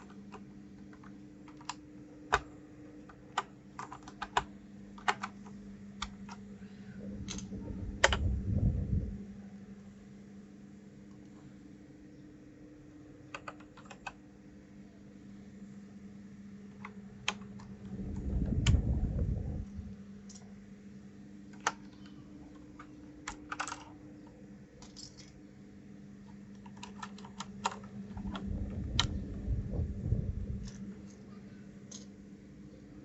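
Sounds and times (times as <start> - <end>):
faint steady hum: 0.0 - 33.0
low rumbling handling noise: 7.0 - 9.3, 17.6 - 20.6, 28.0 - 31.3.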